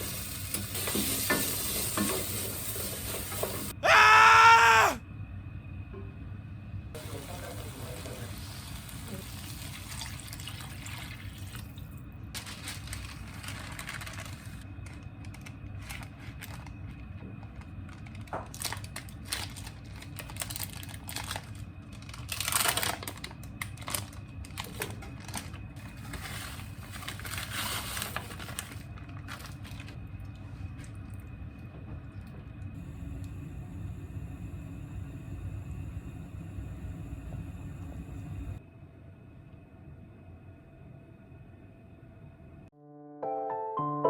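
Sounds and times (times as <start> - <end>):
steady low hum: 29.0 - 42.7.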